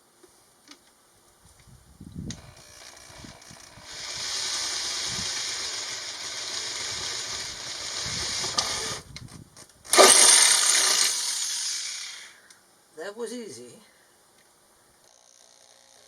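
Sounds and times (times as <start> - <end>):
electric drill boring sheet metal: 2.3 - 9.0, 9.9 - 12.4, 15.1 - 16.0.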